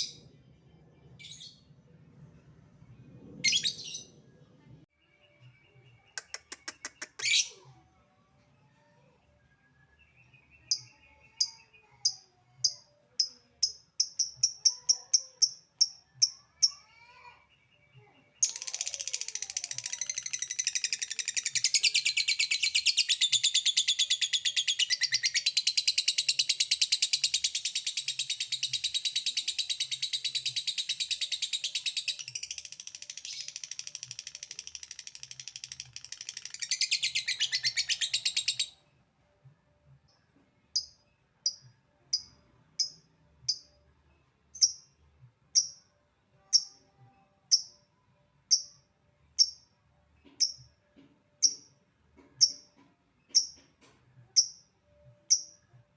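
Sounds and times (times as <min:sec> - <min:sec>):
lovebird rapid high chatter: 0:18.4 - 0:38.6.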